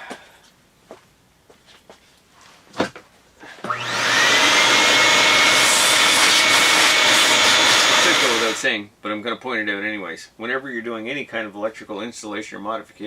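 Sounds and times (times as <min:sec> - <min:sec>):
electric motor whining and humming: 0:03.7 - 0:08.7.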